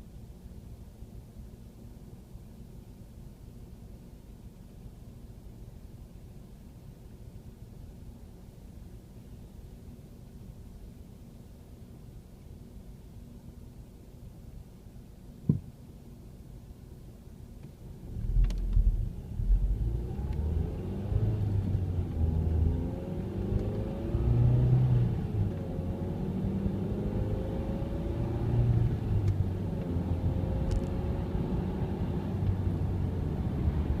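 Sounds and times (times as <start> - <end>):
car engine accelerating: 17.9 - 34.0.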